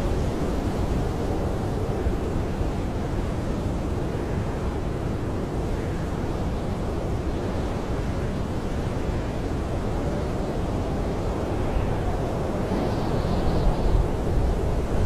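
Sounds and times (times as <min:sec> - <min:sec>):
blizzard wind rushing: 0:00.0 - 0:15.0.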